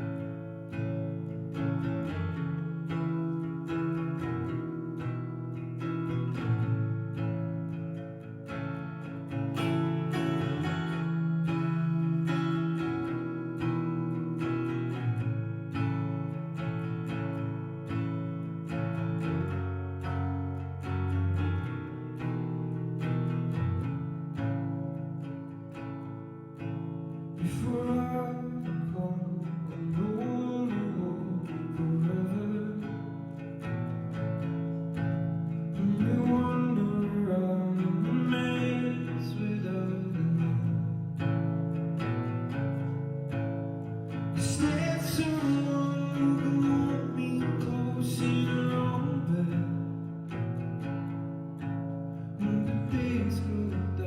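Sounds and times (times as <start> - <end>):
strummed acoustic guitar: 0.0 - 54.0
man singing: 27.4 - 33.4, 35.7 - 40.9, 44.4 - 50.0, 52.4 - 54.0.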